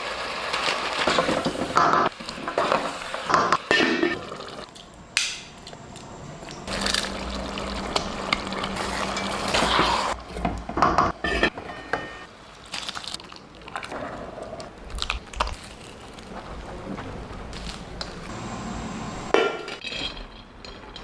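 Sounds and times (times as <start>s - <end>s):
water pouring into a pot: 6.7s - 10.2s
kitchen utensils clinking: 7.9s - 12.3s.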